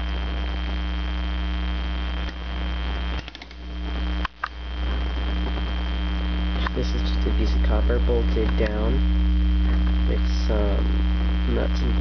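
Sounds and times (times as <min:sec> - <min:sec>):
electrical mains hum: 0:00.0 - 0:12.0.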